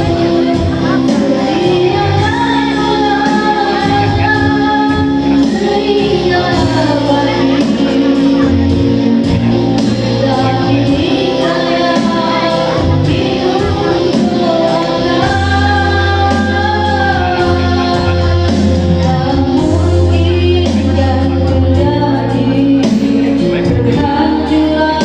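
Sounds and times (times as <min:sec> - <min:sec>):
music with steady bass: 0:00.0 - 0:25.0
person singing: 0:00.0 - 0:25.0.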